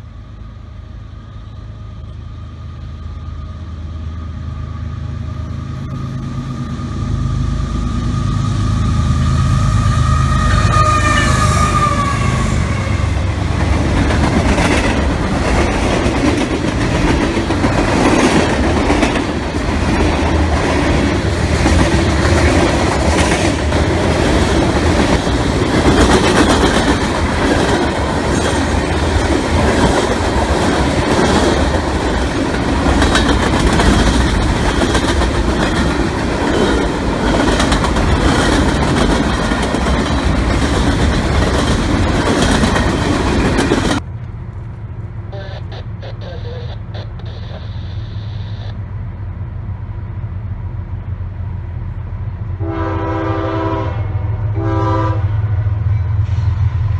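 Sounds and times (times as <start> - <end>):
freight train rumble: 0.0 - 56.9
wheels clacking over rail joints: 10.1 - 44.8.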